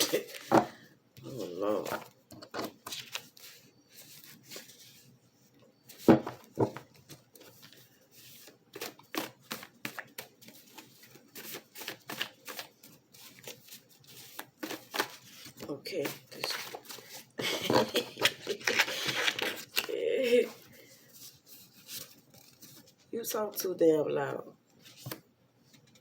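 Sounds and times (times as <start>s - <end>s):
cards being shuffled: 6.0s - 20.6s.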